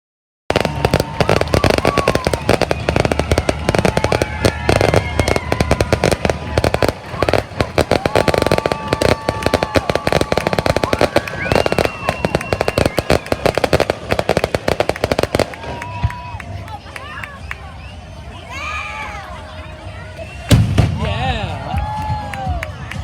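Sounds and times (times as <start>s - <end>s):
firework whistling tones: 0.5s - 16.3s
fireworks banging and crackling: 0.5s - 17.1s, 20.3s - 23.0s.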